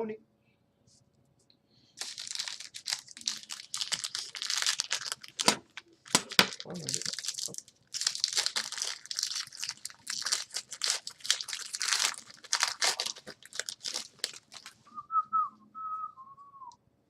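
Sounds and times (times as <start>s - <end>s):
plastic wrapper crinkling and tearing: 2.0s - 14.9s
cards handled: 3.8s - 7.2s
person whistling: 14.9s - 16.8s.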